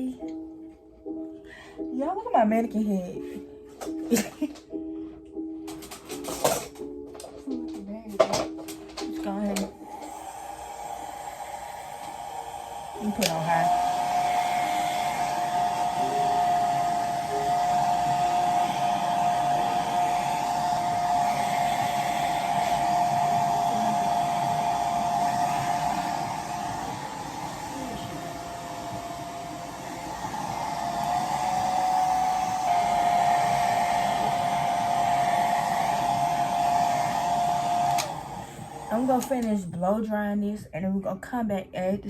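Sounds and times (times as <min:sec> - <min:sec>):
hair dryer running: 0:08.1 - 0:39.8.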